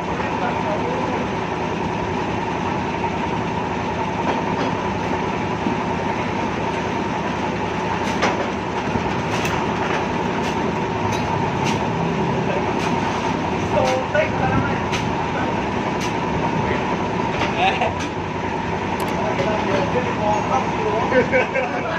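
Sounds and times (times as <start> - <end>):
diesel engine clattering: 0.0 - 21.9.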